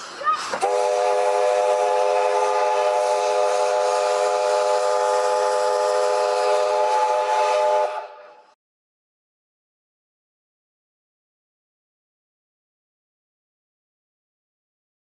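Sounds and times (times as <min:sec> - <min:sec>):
steam hissing: 0:00.0 - 0:08.5
steam locomotive whistle: 0:00.4 - 0:08.6.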